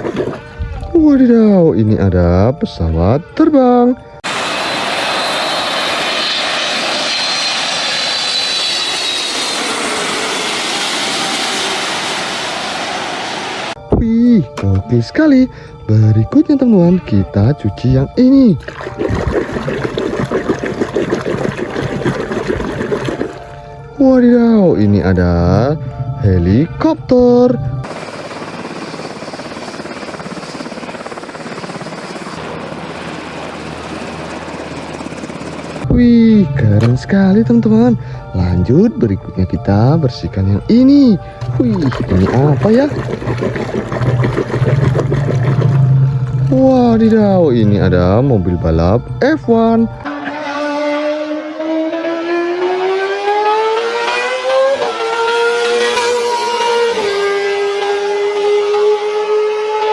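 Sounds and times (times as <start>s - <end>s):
helicopter rotor chopping: 4.2s - 13.8s, 18.6s - 23.6s, 27.1s - 38.0s, 41.3s - 47.9s
jet engine roar: 4.2s - 13.8s
faint high whine: 4.3s - 13.8s
low hum: 17.2s - 50.2s.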